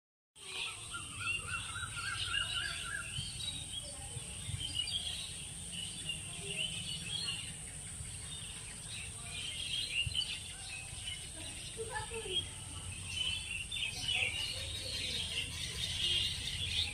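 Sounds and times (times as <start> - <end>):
birds chirping and twittering: 0.4 - 16.9
low warbling bird call: 0.5 - 3.5.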